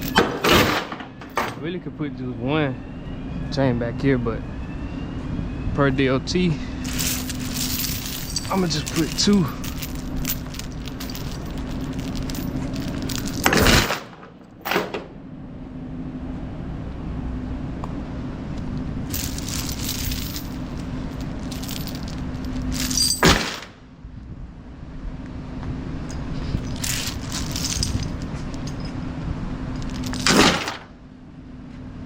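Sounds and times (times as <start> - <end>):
chains rattling: 0.0 - 1.6, 6.8 - 14.9, 19.1 - 23.7, 26.1 - 29.0, 29.8 - 30.9
metal chains clanking: 0.0 - 1.6, 6.8 - 15.0, 19.1 - 23.8, 26.1 - 29.0, 29.7 - 30.9
steady low hum: 0.0 - 32.0.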